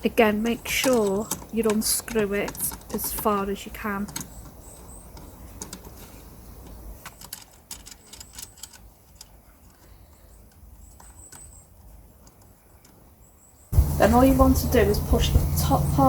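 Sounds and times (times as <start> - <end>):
screws clicking and knocking: 0.5 - 11.6.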